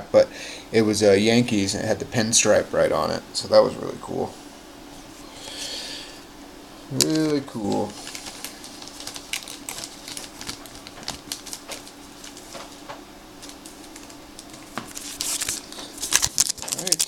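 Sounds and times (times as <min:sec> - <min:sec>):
faint steady hum: 0:00.0 - 0:17.0
pack wrapper rustling: 0:07.0 - 0:17.0.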